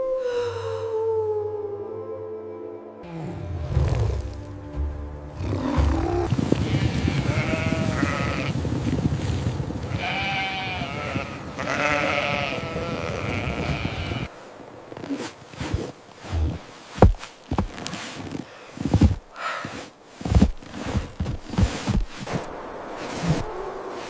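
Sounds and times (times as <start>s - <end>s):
sheep bleating: 6.2s - 8.6s, 9.9s - 14.3s.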